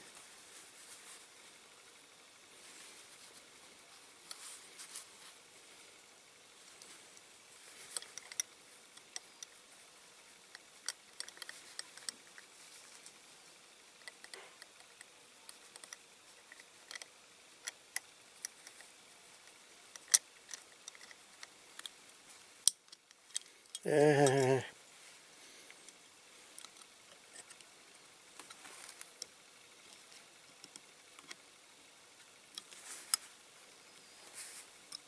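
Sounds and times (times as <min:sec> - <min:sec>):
model parts clicking and tapping: 0:10.5 - 0:12.5, 0:14.0 - 0:22.0
wavering vocal sound: 0:23.8 - 0:24.7.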